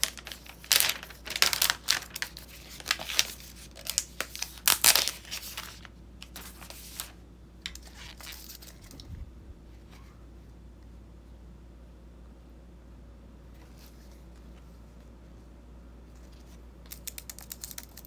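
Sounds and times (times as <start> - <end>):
packaging crinkling and tearing: 0.0 - 9.0.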